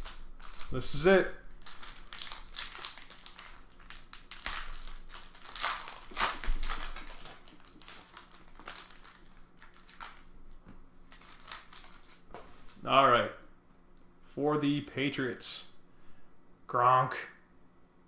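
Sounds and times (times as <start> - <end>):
plastic wrapping crinkling: 0.0 - 12.8.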